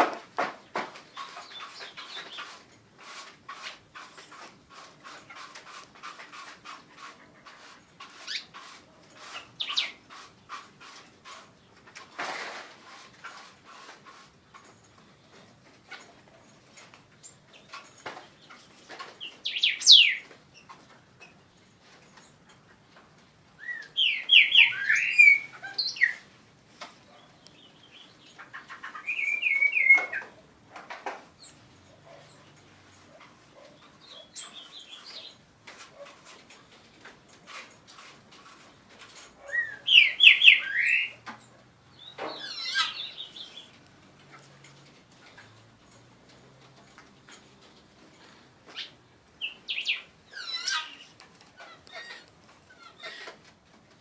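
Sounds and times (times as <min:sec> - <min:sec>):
pet birds chirping: 0:00.7 - 0:02.6, 0:07.0 - 0:10.6, 0:15.2 - 0:21.3, 0:23.6 - 0:26.3, 0:26.9 - 0:30.4, 0:31.4 - 0:35.4, 0:39.2 - 0:46.0, 0:47.2 - 0:53.5
high sweeping bird calls: 0:09.2 - 0:10.0, 0:19.2 - 0:20.3, 0:23.6 - 0:26.3, 0:27.2 - 0:30.4, 0:34.0 - 0:35.4, 0:39.4 - 0:41.2, 0:41.9 - 0:43.8, 0:48.7 - 0:53.3.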